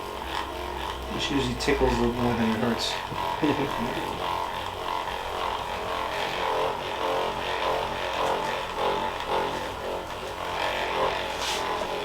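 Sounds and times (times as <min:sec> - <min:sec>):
massager motor buzz: 0:00.0 - 0:12.0.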